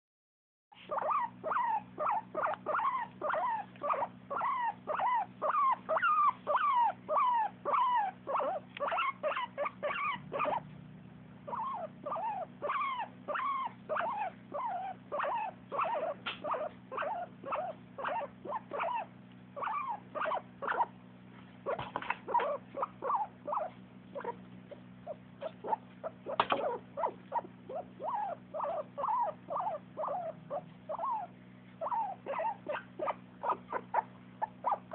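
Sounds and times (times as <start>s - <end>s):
pet animal short pitched calls: 0.8s - 10.6s, 25.1s - 34.9s.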